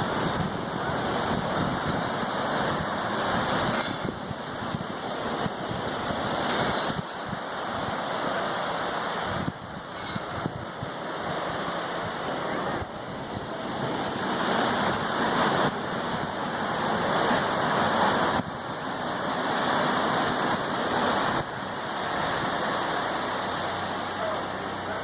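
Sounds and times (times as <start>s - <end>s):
ocean surf washing in: 0.0s - 25.0s.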